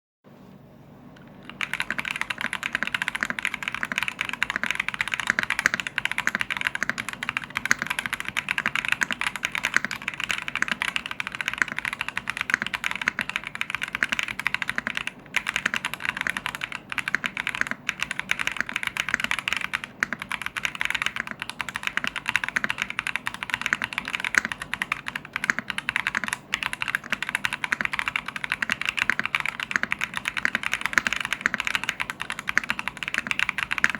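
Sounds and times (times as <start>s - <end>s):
mechanical keyboard typing: 1.2s - 33.9s.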